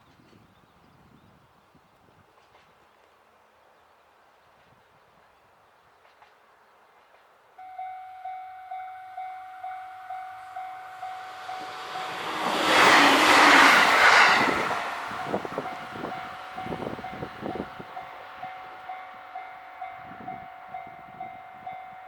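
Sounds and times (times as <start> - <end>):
freight train passing: 6.0 - 22.0
level crossing warning bell: 7.6 - 12.4, 15.1 - 22.0.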